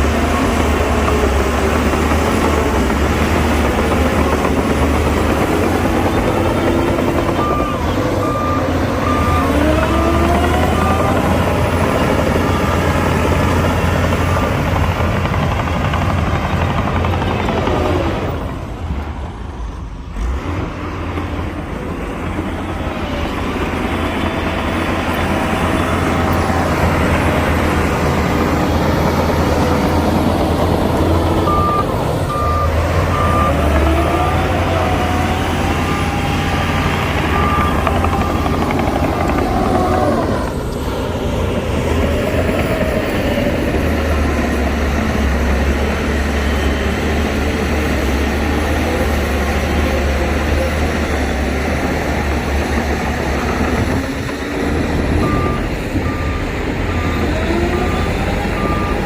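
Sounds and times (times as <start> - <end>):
diesel machinery revving: 0.0 - 59.0
reversing alarm beeping: 2.2 - 15.4, 24.7 - 40.6, 52.7 - 59.0.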